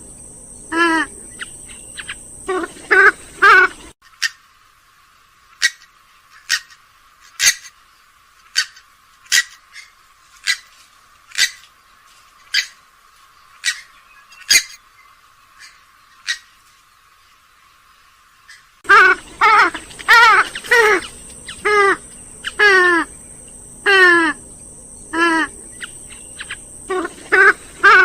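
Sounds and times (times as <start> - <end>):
swamphen calling: 0.0 - 4.5, 8.4 - 11.7, 13.4 - 16.6, 18.4 - 28.0.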